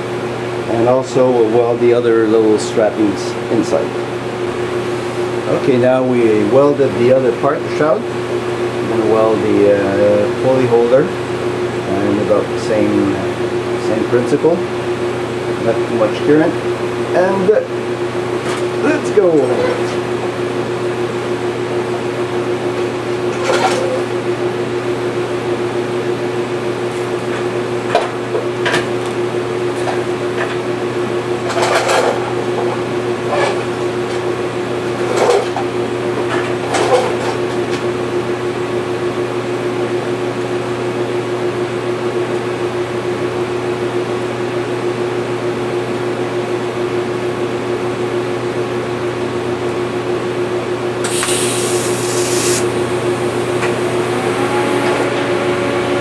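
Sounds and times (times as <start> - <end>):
steady machine hum: 0.0 - 31.5, 48.6 - 56.0
welding arc crackling: 51.0 - 54.8.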